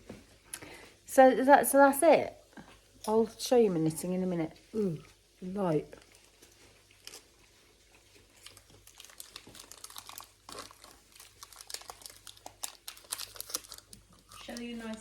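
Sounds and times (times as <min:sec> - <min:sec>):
crinkling and rustling: 0:04.0 - 0:15.0.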